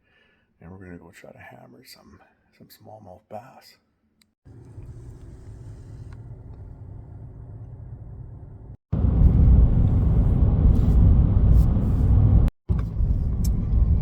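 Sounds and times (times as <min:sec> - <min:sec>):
vehicle road noise hum: 0:04.5 - 0:14.0
loud low rumble: 0:06.6 - 0:14.0.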